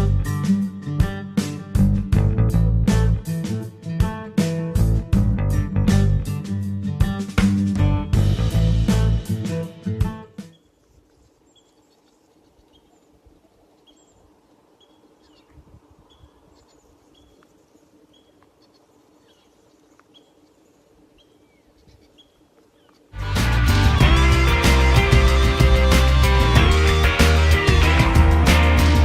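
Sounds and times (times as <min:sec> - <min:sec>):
rural ambience: 0:05.9 - 0:29.0
bird chirping: 0:10.4 - 0:23.1.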